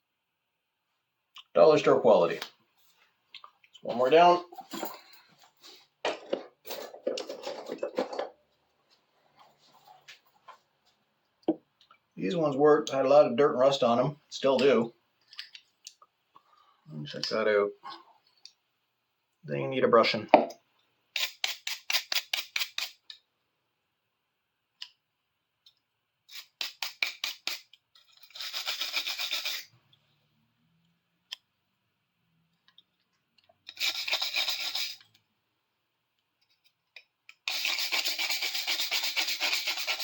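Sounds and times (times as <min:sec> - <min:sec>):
hand brush scrubbing metal: 0:28.2 - 0:29.7, 0:33.7 - 0:35.0, 0:37.5 - 0:40.0.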